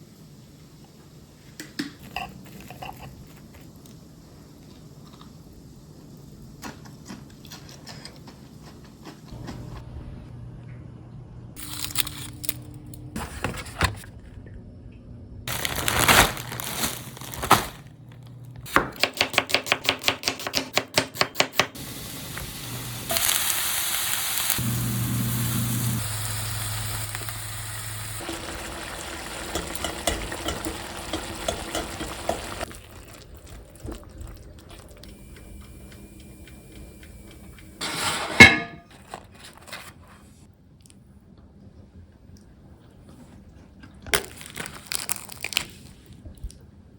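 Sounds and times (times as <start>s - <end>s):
food sizzling: 21.7s - 38.0s
utensils clinking on cookware: 28.2s - 32.7s, 37.8s - 39.1s.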